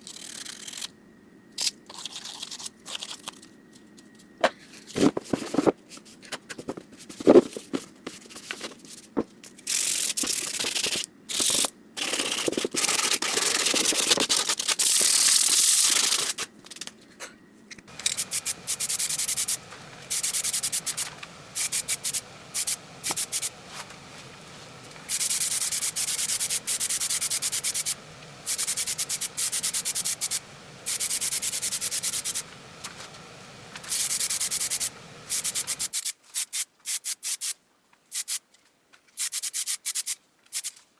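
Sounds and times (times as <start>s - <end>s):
sandpaper rasping by hand: 9.8s - 16.4s.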